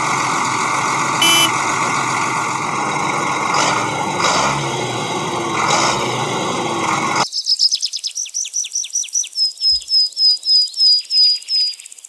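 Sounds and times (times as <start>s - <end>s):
vehicle engine: 0.0s - 7.2s
bird chirping: 7.2s - 12.0s.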